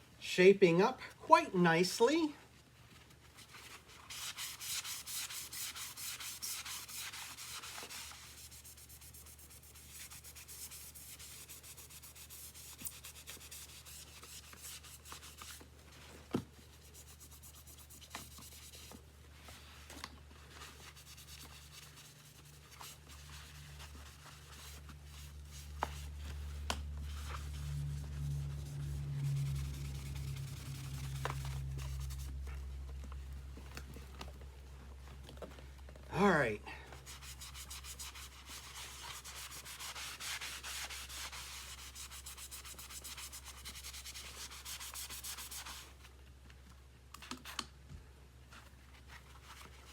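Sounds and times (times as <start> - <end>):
hand scrubbing plastic: 3.5 - 15.8, 36.9 - 46.0
low hum: 25.0 - 35.0.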